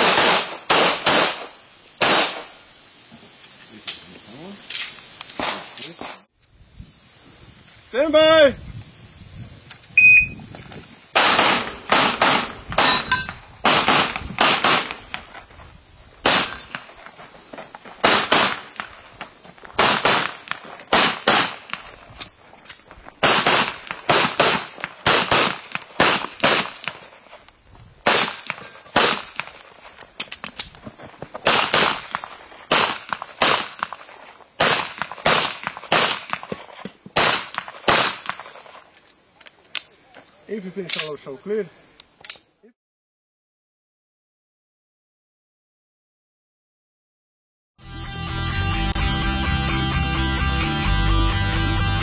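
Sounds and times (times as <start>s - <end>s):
shot timer beep: 10.0s - 10.4s
handgun shots: 16.3s - 16.8s, 18.0s - 18.9s, 19.8s - 21.8s.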